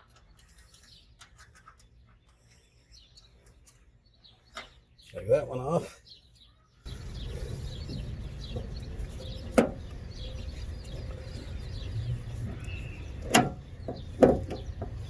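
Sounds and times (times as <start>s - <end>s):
birds chirping faintly: 0.0s - 15.0s
steady low rumble: 6.9s - 15.0s.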